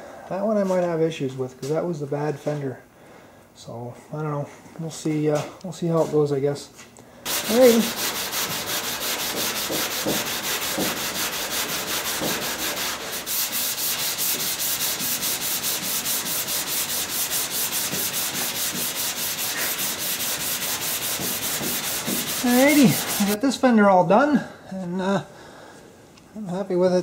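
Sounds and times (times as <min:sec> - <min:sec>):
sandpaper rubbing on metal: 0:07.3 - 0:23.4.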